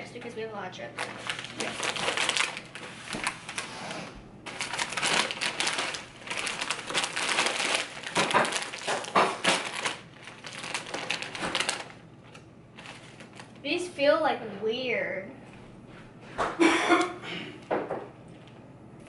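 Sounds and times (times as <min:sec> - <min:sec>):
snack bag crackling: 0:01.0 - 0:13.6.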